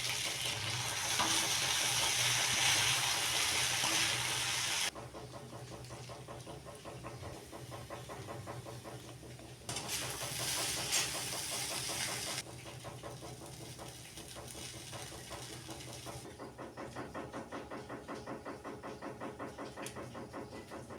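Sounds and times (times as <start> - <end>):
food sizzling in a pan: 0.0 - 4.9, 9.7 - 12.4.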